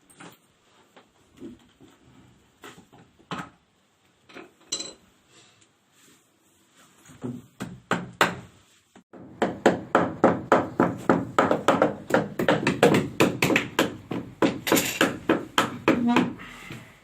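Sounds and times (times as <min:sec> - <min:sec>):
fast tapping knocks: 0:09.4 - 0:16.4.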